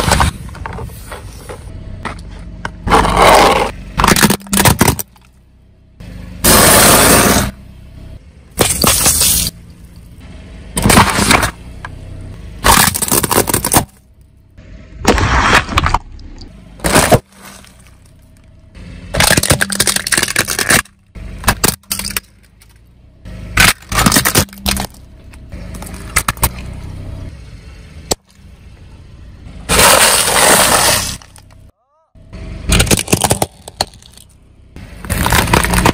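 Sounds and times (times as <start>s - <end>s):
car rolling noise: 0.0s - 35.9s
tyres crushing objects: 2.1s - 5.3s, 12.6s - 14.0s, 15.0s - 16.2s, 16.8s - 18.1s, 19.1s - 22.7s, 23.5s - 25.0s, 29.6s - 31.6s, 32.7s - 34.4s, 35.0s - 35.9s.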